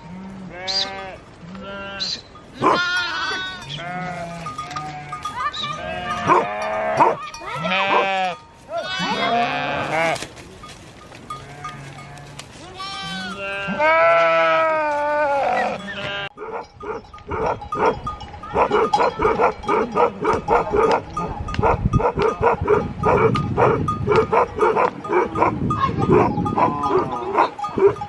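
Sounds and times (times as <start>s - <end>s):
sheep bleating: 0.0s - 10.2s, 11.4s - 16.7s
dog barking: 2.6s - 2.8s, 6.2s - 8.2s, 16.4s - 28.0s.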